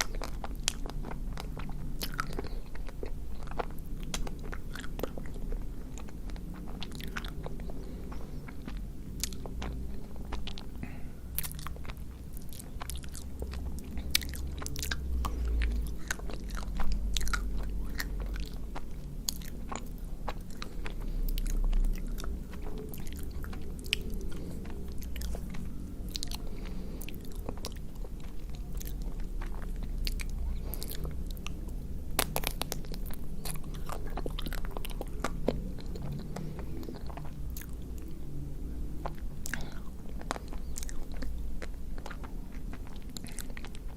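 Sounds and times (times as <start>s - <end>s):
chewing with sharp crunches: 0.0s - 43.9s.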